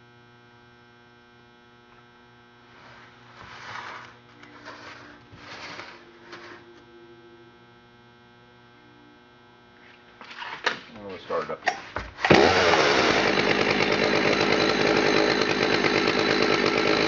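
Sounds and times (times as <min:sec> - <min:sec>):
electrical hum: 0:00.0 - 0:12.4.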